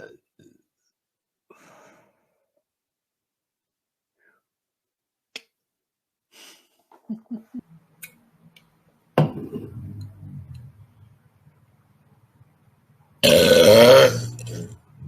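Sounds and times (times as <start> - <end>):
woman belching loudly: 13.2 - 14.8.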